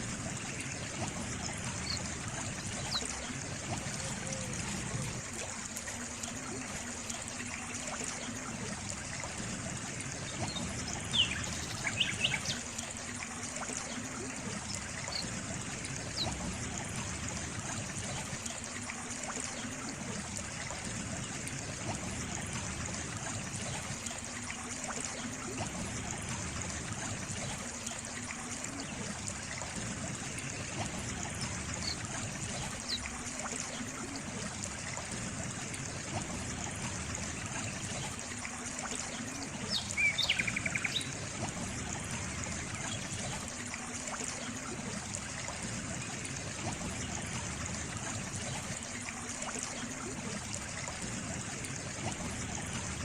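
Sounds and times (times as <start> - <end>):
water trickling: 0.0 - 53.0.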